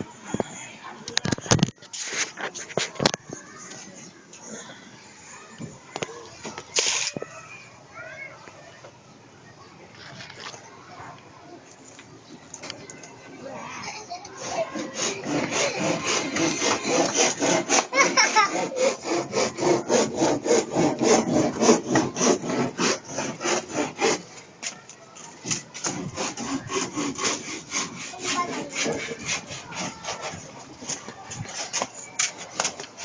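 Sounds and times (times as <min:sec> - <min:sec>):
rasping scraping on wood: 0:14.3 - 0:24.4, 0:25.2 - 0:33.0.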